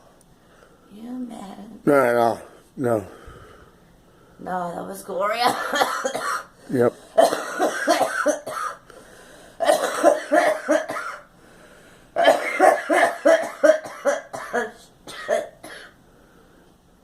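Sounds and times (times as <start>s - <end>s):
girl coughing: 5.4s - 6.5s, 7.2s - 8.8s, 9.6s - 11.3s, 12.2s - 16.0s.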